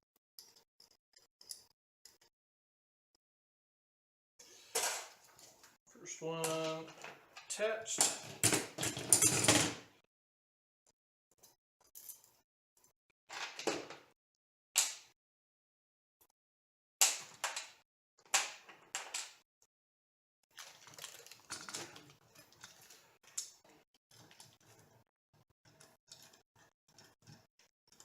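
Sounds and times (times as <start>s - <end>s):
small parts clicking and clinking: 0.4s - 2.3s, 11.4s - 13.7s.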